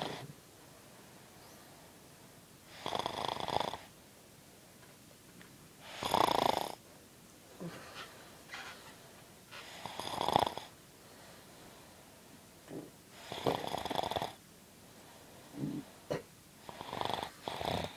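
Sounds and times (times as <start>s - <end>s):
person snoring: 0.0s - 0.3s, 5.9s - 6.8s, 9.7s - 10.7s, 13.2s - 14.4s, 15.5s - 15.9s, 16.7s - 17.9s
soft breaths: 0.0s - 3.1s, 6.8s - 14.0s, 14.7s - 17.9s.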